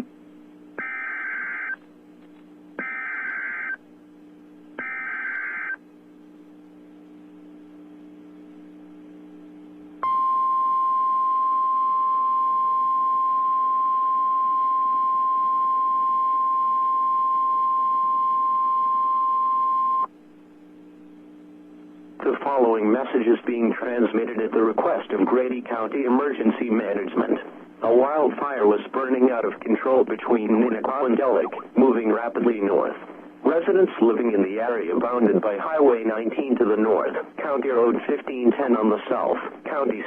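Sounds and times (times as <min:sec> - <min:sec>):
steady attention tone: 0:00.0 - 0:01.8, 0:02.7 - 0:22.2
low hum: 0:00.0 - 0:22.4
data tone bursts: 0:00.8 - 0:01.8, 0:02.8 - 0:03.8, 0:04.8 - 0:05.8.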